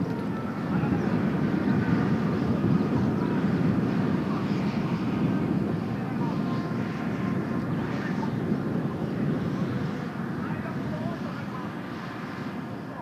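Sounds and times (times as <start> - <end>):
jet engines rumbling with whine: 0.0 - 13.0
wind buffeting microphone: 0.0 - 13.0.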